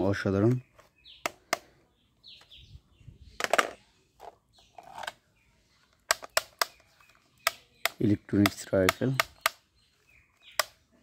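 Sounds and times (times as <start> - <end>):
small bird chirping: 0.0 - 11.0
toy gun clicks and knocks: 6.0 - 9.7.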